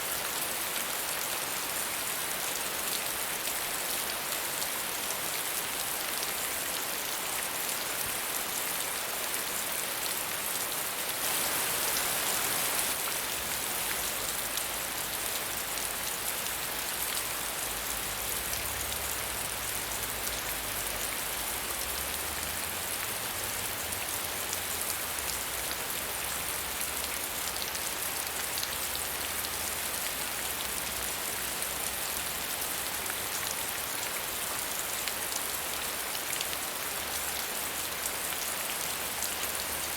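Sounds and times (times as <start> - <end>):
rain pattering: 0.2 - 39.9.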